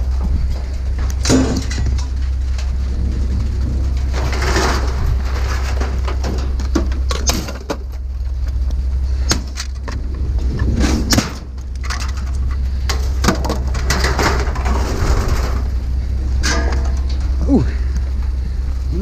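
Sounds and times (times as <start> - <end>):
steady rain: 0.0 - 7.1
knocks and clanks of handling: 0.0 - 18.5
low rumble: 0.0 - 19.0.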